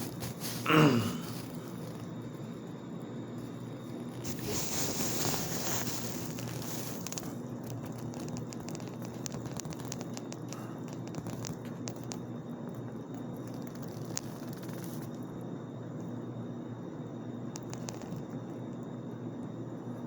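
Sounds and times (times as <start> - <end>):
steady low hum: 0.0 - 20.0
sharp clicks and crackles: 3.9 - 15.2, 17.5 - 18.4.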